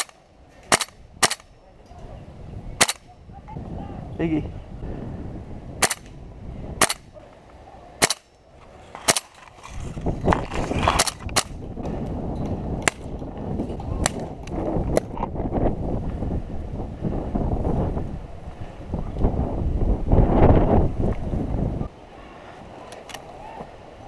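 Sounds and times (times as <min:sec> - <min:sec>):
airsoft rifle shots: 0:00.0 - 0:01.5, 0:02.8 - 0:03.1, 0:05.8 - 0:06.1, 0:06.8 - 0:07.1, 0:08.0 - 0:08.3, 0:09.0 - 0:09.4
low wind rumble: 0:00.0 - 0:24.0.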